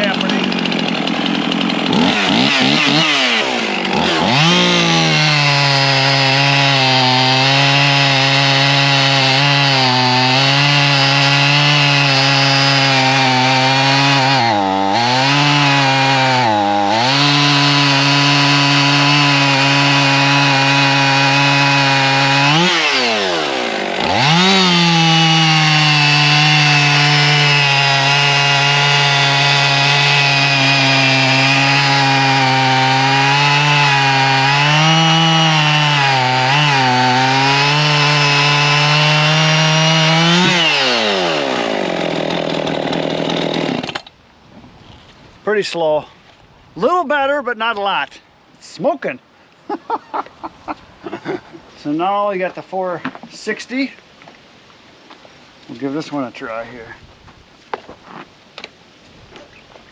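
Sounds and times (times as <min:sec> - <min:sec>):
chainsaw cutting through log: 0:00.0 - 0:44.2.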